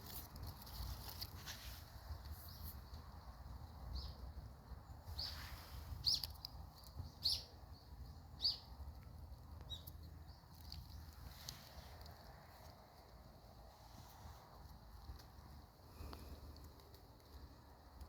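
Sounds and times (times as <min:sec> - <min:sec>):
low rumble of wind: 0:00.0 - 0:18.0
small bird chirping: 0:01.6 - 0:12.1.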